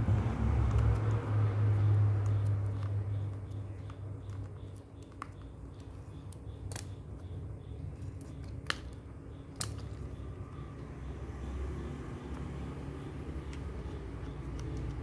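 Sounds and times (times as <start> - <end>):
smartphone parts clicking: 2.1 - 10.3, 13.4 - 15.0.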